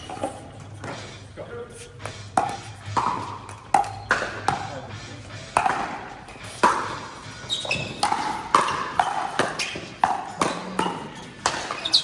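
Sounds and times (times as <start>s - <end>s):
ball bouncing on court: 2.0s - 4.8s, 5.5s - 12.0s
paddles hitting plastic ball: 2.0s - 4.8s, 5.5s - 7.0s, 7.7s - 12.0s.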